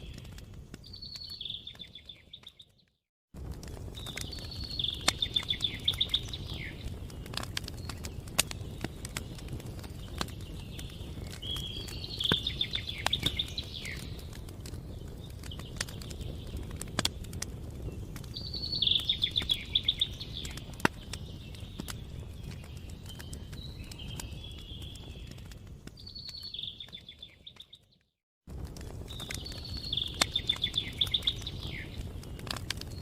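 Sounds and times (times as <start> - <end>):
sharp crackles: 0.0 - 33.0.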